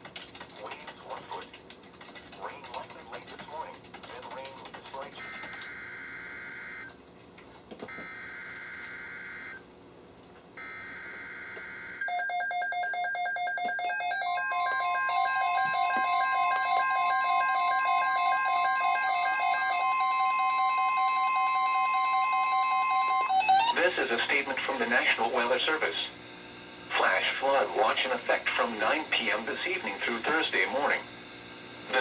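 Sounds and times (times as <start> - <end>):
alert radios beeping: 5.0 - 7.0, 13.1 - 26.1
steady warning alarm tone: 5.0 - 7.0, 7.9 - 9.7, 10.6 - 26.1.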